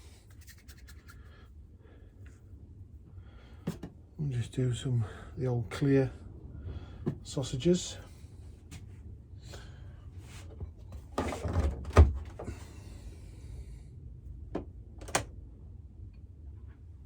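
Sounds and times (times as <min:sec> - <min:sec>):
hands rubbing clay: 0:00.0 - 0:01.4.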